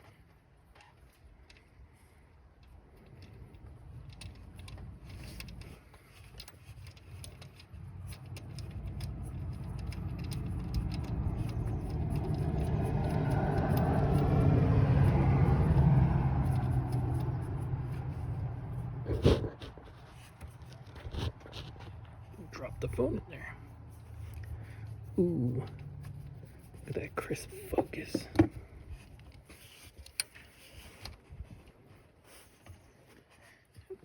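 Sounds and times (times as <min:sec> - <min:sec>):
light clicks and taps: 0:02.5 - 0:19.0
vehicle passing by: 0:07.9 - 0:28.4.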